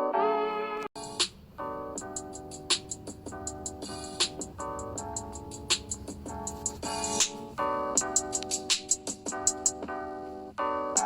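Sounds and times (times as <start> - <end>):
light percussion beat: 1.0 - 9.9
plucked string and keyboard chords: 1.0 - 10.2.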